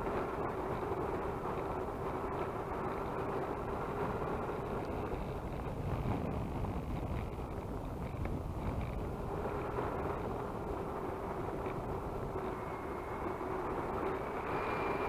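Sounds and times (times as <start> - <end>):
wind rushing over microphone: 0.0 - 15.0
electric motors and propellers running: 8.0 - 15.0.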